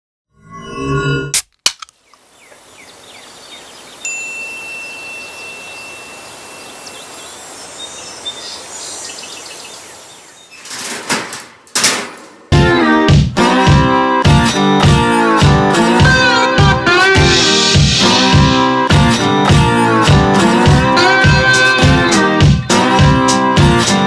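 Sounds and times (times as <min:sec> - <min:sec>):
steady outdoor hiss: 0:01.9 - 0:10.6
knocks: 0:10.6 - 0:12.8.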